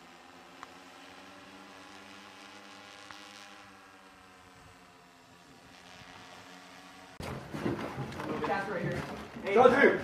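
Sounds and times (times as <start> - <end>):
faint engine drone: 0.0 - 10.0
small tick: 0.6 - 0.8.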